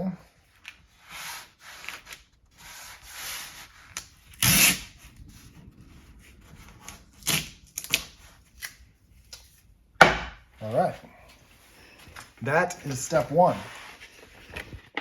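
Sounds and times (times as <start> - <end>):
tape rubbing and scraping: 0.3 - 9.8, 10.7 - 15.0
tape ripping: 0.6 - 5.1, 6.5 - 9.6.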